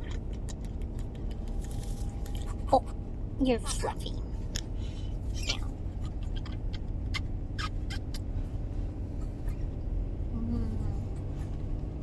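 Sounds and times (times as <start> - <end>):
car road and engine rumble: 0.0 - 12.0
parrot calls: 5.4 - 8.4.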